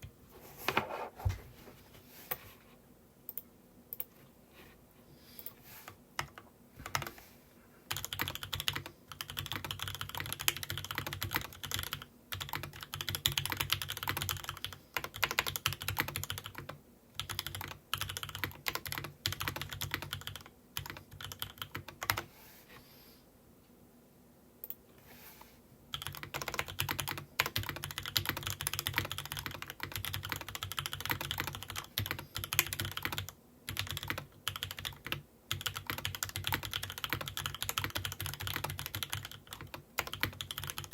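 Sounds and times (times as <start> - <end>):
mechanical keyboard typing: 7.9 - 22.3, 25.9 - 40.9.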